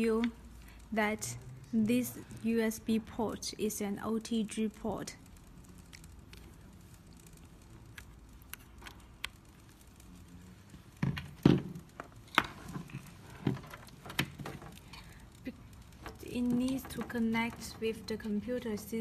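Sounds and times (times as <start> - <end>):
knocks and plastic clatters: 11.0 - 15.1, 16.0 - 18.0.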